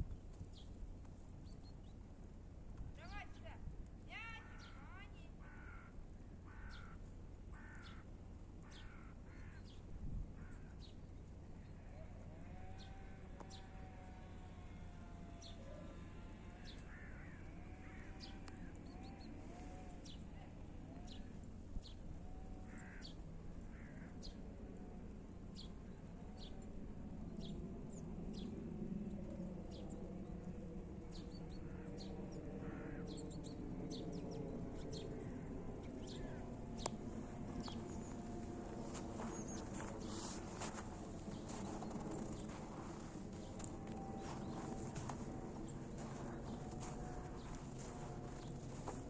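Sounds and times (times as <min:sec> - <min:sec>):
faint low rumble: 0:00.0 - 0:49.0
birds chirping: 0:03.0 - 0:07.0, 0:07.6 - 0:24.5, 0:25.5 - 0:49.0
lower wavering bird calls: 0:04.4 - 0:07.0, 0:10.4 - 0:24.5, 0:25.6 - 0:49.0.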